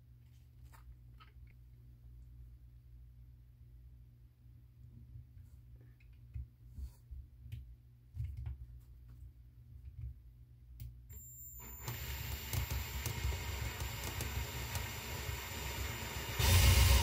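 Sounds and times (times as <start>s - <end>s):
electric drill whining: 11.6s - 17.0s.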